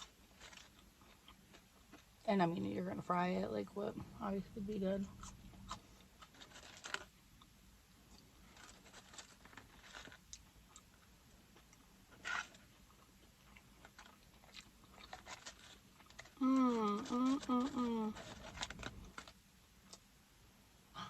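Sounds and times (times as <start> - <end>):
chewing food: 0.0 - 2.3, 5.0 - 20.1
food crunching: 0.0 - 2.3, 5.0 - 20.1.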